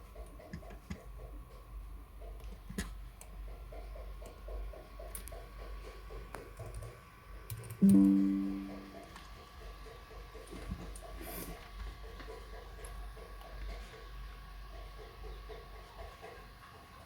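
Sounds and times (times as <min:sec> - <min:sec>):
plucked musical note: 0:07.8 - 0:09.0
soft repeating background sounds: 0:07.8 - 0:09.1.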